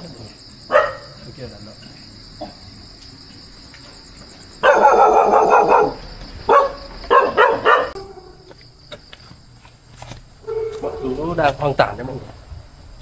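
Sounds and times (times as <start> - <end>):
insects chirring: 0.0 - 13.0
dog barking: 0.7 - 1.2, 4.6 - 8.4, 10.4 - 11.0.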